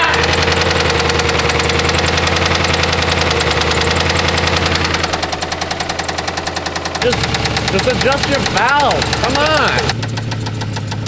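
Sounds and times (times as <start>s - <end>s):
car engine running: 0.0s - 11.0s
rapid engine knock: 0.0s - 11.0s.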